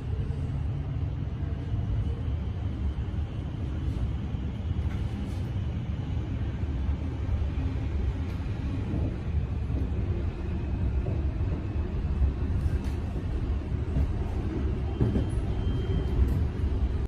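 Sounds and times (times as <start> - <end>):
electric train rumble: 0.0 - 17.0.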